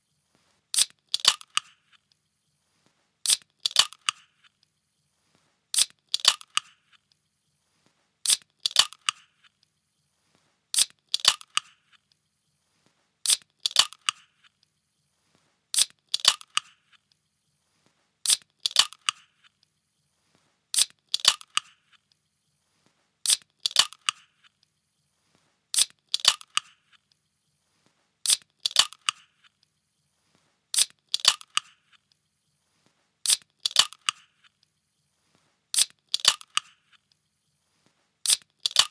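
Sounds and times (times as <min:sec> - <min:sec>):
can snapping open with hiss: 0:00.8 - 0:01.7, 0:03.3 - 0:04.2, 0:05.8 - 0:06.7, 0:08.3 - 0:09.2, 0:10.8 - 0:11.7, 0:13.3 - 0:14.2, 0:15.8 - 0:16.7, 0:18.3 - 0:19.2, 0:20.8 - 0:21.7, 0:23.3 - 0:24.2, 0:25.8 - 0:26.7, 0:28.3 - 0:29.2, 0:30.8 - 0:31.7, 0:33.3 - 0:34.2, 0:35.8 - 0:36.7, 0:38.3 - 0:38.9.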